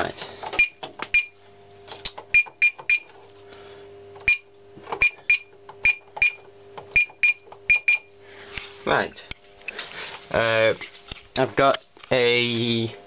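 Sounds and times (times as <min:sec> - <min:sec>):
steady low hum: 0:00.0 - 0:13.0
keypad button clicks with beeps: 0:02.3 - 0:03.1, 0:05.0 - 0:08.1.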